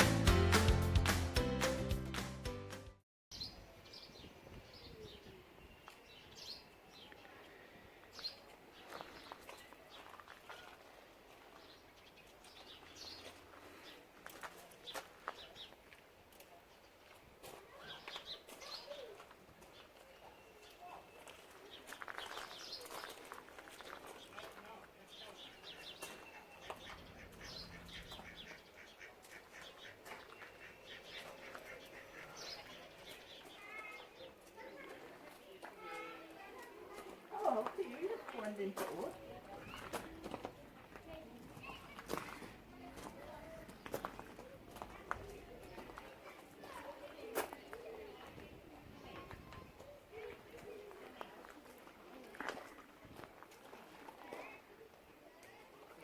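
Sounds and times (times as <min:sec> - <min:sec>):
background music: 0:00.0 - 0:03.0
small birds chirping: 0:03.3 - 0:35.7, 0:39.3 - 0:51.4
ducks quacking faintly: 0:25.2 - 0:34.0.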